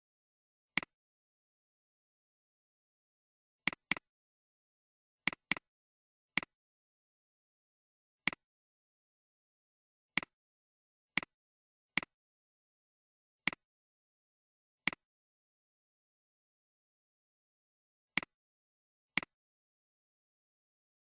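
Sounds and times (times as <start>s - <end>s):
computer mouse clicks: 3.7s - 4.1s, 5.3s - 5.7s, 19.2s - 19.4s.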